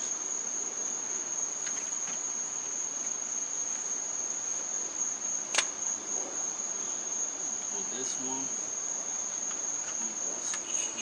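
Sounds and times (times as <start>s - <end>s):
high-pitched insect chirring: 1.3s - 11.0s
sharp click: 5.5s - 5.7s.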